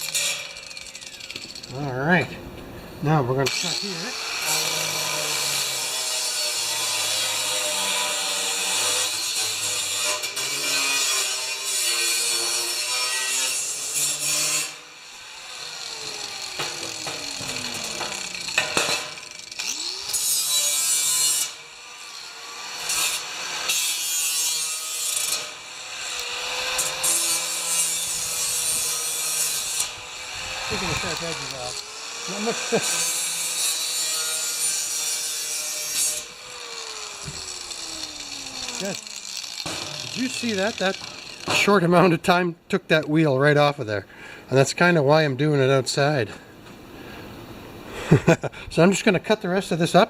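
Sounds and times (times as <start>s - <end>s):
angle grinder cutting sheet metal: 0.0s - 1.8s, 3.4s - 42.1s
grinder winding down whine: 15.6s - 20.2s, 36.4s - 41.5s.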